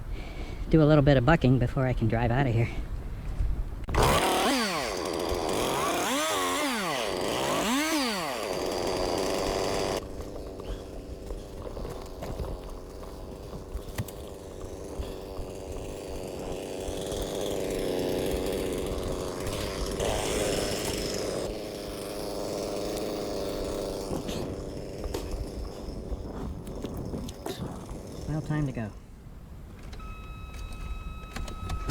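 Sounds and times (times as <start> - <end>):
chainsaw cutting wood: 3.9 - 29.0.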